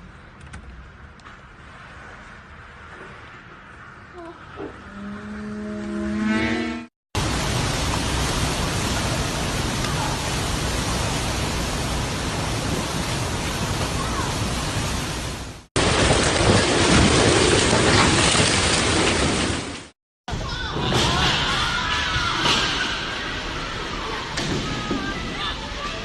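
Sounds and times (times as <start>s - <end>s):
storm wind and driving rain: 7.2s - 20.0s, 21.0s - 26.0s.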